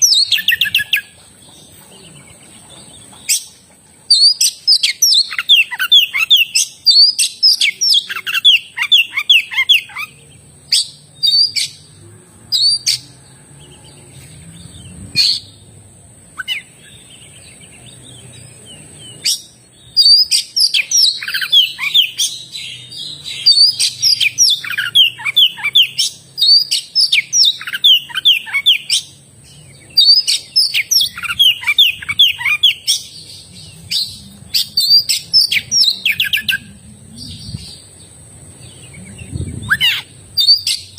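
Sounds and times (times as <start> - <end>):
bird singing whistled notes: 0.0 - 1.2, 4.1 - 11.9, 16.4 - 37.9, 38.6 - 40.9.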